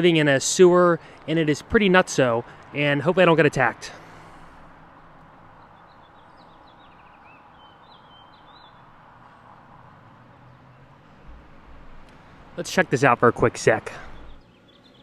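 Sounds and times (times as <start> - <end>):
outdoor background noise: 0.0 - 15.0
low bumps: 2.6 - 14.4
faint bird chirps: 5.0 - 8.9.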